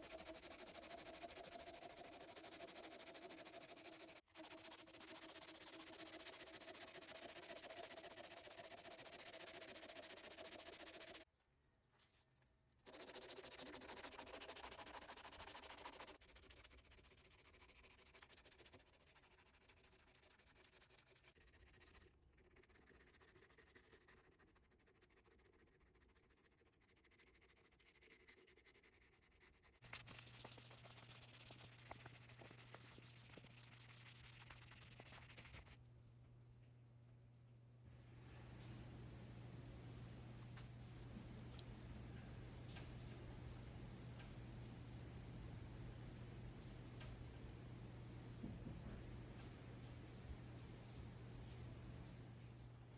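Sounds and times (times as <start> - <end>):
rubbing and scraping on knife: 0.0 - 11.3, 12.9 - 35.8
low steady hum: 29.8 - 52.9.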